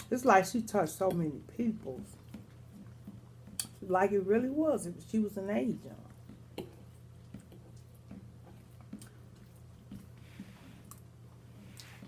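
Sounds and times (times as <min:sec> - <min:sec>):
steady low hum: 0:00.0 - 0:12.0
faint wet chewing: 0:02.0 - 0:03.8, 0:06.0 - 0:12.0.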